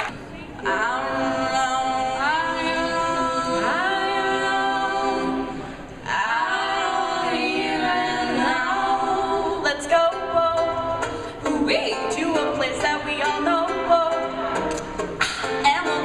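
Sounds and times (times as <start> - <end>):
group singing a cappella chords: 0.6 - 14.4.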